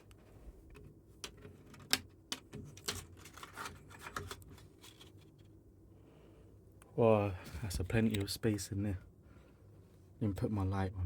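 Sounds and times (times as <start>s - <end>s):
sharp clicks and light knocks: 0.0s - 3.4s, 7.9s - 8.3s
rubbing and rustling: 0.0s - 5.6s.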